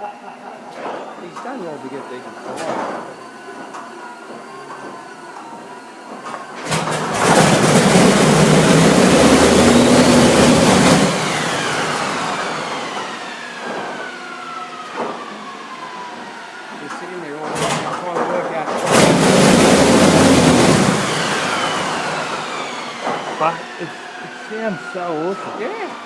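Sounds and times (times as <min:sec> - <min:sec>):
radial aircraft engine firing: 0:06.6 - 0:25.5
engine winding down whine: 0:06.7 - 0:26.0.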